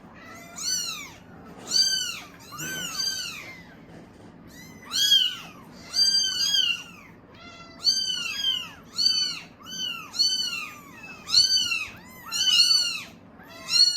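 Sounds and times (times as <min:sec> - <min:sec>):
kittens meowing: 0:00.0 - 0:13.9.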